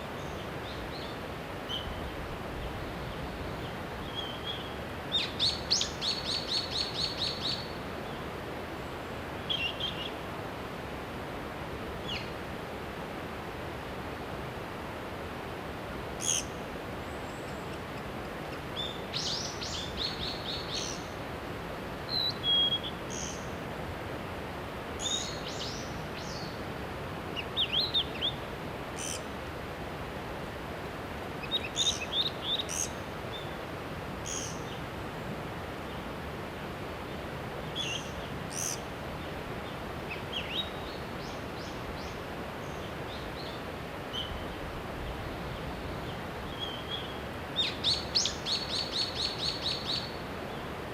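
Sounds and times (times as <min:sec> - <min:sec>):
birds chirping: 0:00.0 - 0:10.2, 0:16.2 - 0:21.2, 0:31.4 - 0:33.6, 0:34.2 - 0:34.9, 0:37.0 - 0:50.7.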